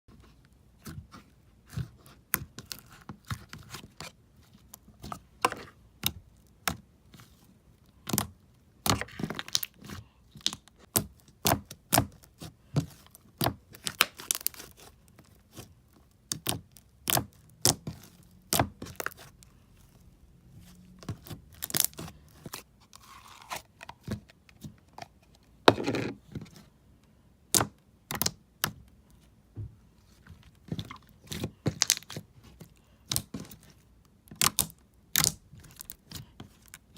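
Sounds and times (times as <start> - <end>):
slime crackling: 8.8 - 20.0, 20.6 - 23.7
slime clicking and popping: 34.3 - 35.9.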